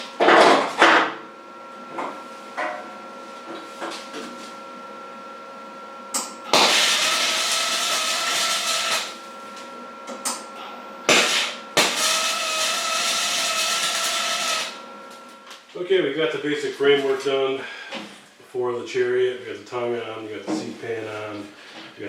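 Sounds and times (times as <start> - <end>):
electric welding arc hissing: 6.5 - 9.3, 11.1 - 14.8.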